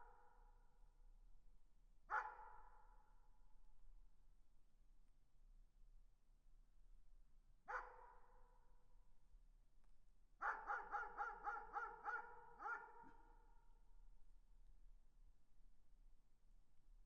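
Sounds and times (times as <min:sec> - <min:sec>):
distant dog barking: 0:02.1 - 0:02.4, 0:10.4 - 0:13.2.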